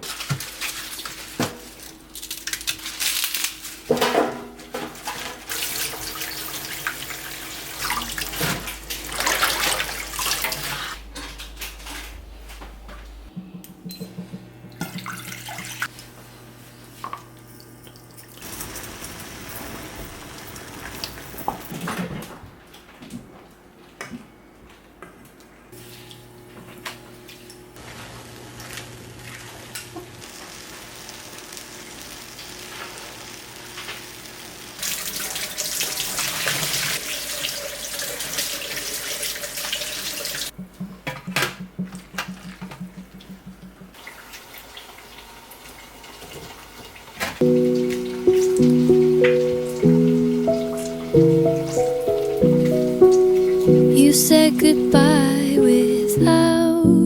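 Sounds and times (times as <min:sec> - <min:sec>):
tap water running into sink: 0:14.2 - 0:15.9.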